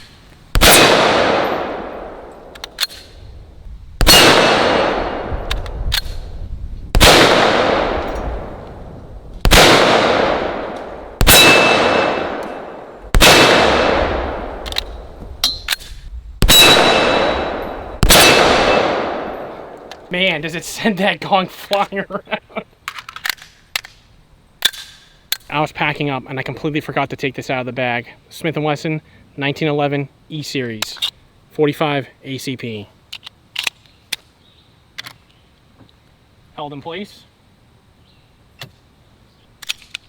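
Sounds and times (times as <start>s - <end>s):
pistol shots: 0.6s - 3.1s, 4.0s - 6.3s, 6.9s - 8.8s, 9.4s - 20.0s.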